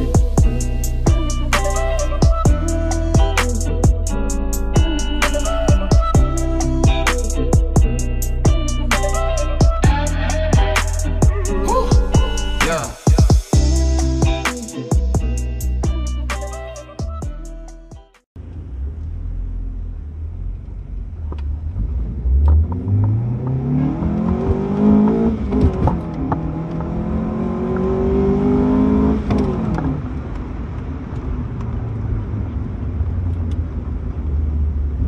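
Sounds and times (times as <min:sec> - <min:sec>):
car engine accelerating hard: 0:18.4 - 0:35.0.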